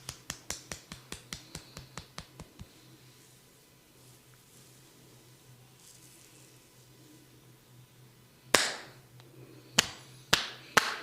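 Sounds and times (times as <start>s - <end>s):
hands tapping in head massage: 0.0s - 2.8s.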